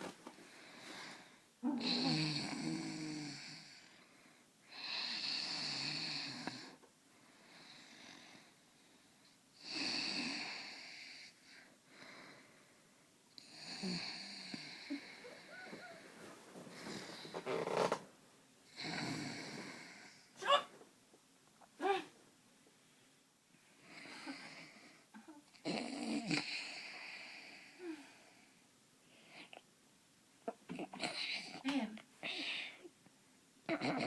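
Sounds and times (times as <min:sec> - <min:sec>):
quiet breathing: 0:00.3 - 0:17.7, 0:18.6 - 0:20.4, 0:22.7 - 0:25.5, 0:26.4 - 0:29.7, 0:31.0 - 0:33.0
person snoring: 0:01.7 - 0:03.8, 0:13.4 - 0:16.0, 0:18.7 - 0:20.3.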